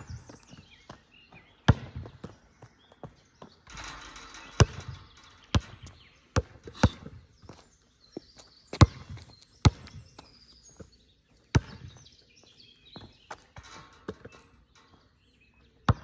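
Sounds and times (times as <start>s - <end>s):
basketball bouncing: 1.7s - 2.3s, 3.7s - 7.2s, 8.8s - 10.0s, 11.5s - 12.0s, 13.4s - 14.5s.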